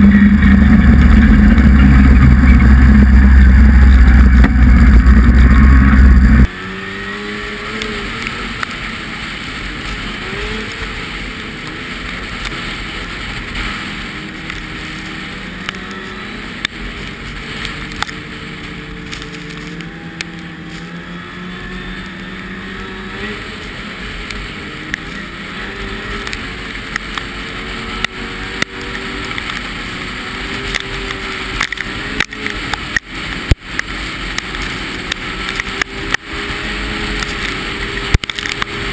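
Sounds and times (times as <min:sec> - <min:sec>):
loud low rumble: 0:00.0 - 0:06.5
vehicle engine running: 0:00.0 - 0:38.9.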